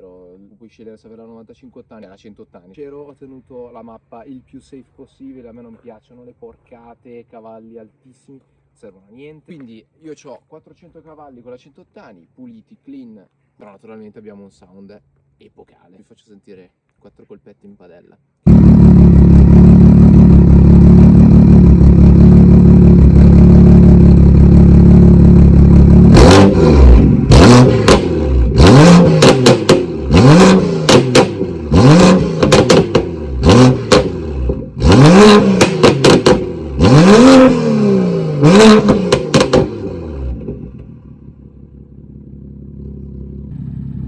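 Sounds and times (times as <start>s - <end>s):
exhaust cracks: 18.4s - 44.0s
car engine revving: 18.5s - 44.0s.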